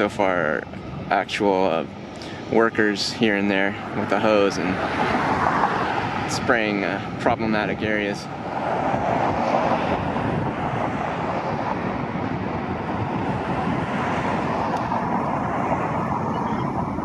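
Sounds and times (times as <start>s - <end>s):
road traffic rushing: 0.0s - 17.0s
wind on microphone: 0.0s - 17.0s.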